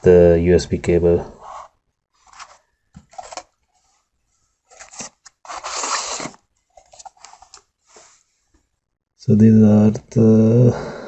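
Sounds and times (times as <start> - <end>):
packaging rustling and crinkling: 2.2 - 3.9, 4.7 - 7.7.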